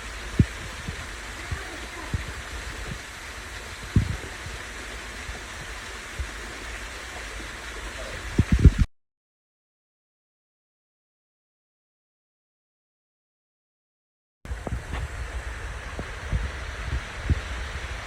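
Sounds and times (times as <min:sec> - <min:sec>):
rushing water of a waterfall: 0:00.0 - 0:08.9, 0:14.5 - 0:18.0.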